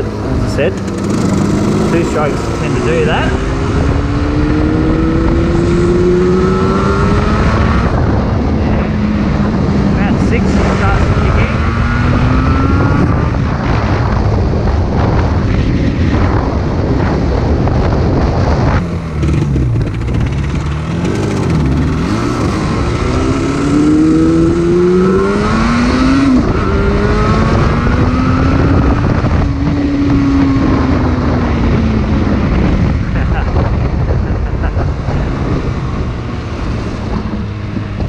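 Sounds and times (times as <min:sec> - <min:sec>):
two-stroke motorcycle engine revving: 0:00.0 - 0:14.2, 0:18.7 - 0:38.0.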